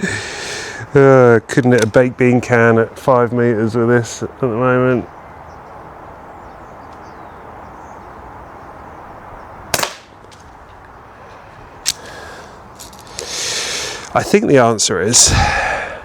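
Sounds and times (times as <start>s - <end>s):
air pistol shot: 9.7s - 10.1s
steady hiss: 11.2s - 16.0s.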